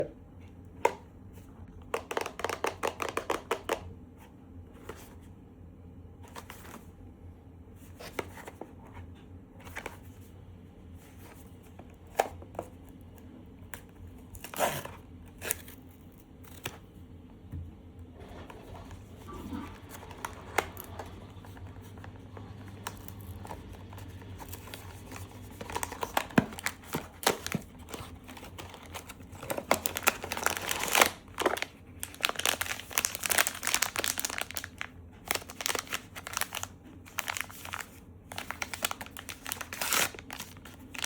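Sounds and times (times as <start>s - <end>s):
packaging tearing: 19.3s - 41.0s.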